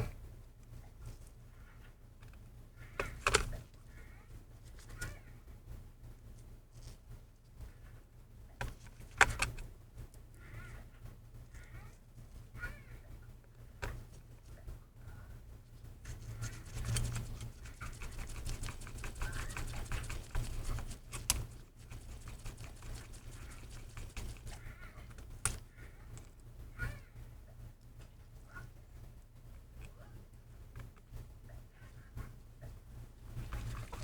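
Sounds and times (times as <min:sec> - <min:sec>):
steady low hum: 0:00.0 - 0:34.0.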